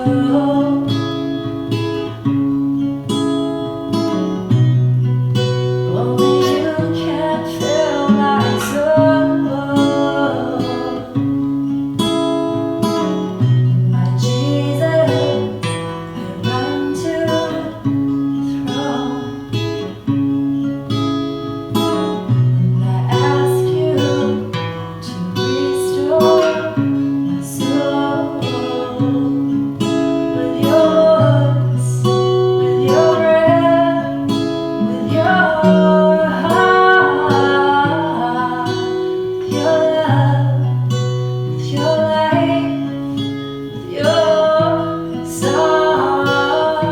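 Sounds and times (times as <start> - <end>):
person singing: 0.0 - 1.4, 5.9 - 11.3, 13.9 - 20.0, 22.7 - 46.9
acoustic guitar strumming: 0.0 - 46.9.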